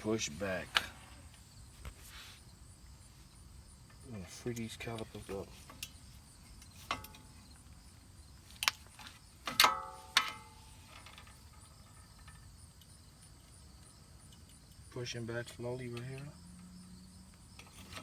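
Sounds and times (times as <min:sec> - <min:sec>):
screwdriver clinking on metal: 0:09.4 - 0:12.9.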